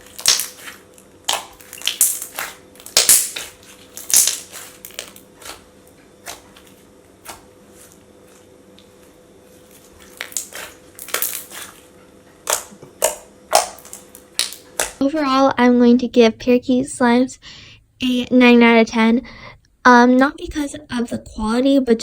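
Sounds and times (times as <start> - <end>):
slime squished by hand: 0.0 - 15.0.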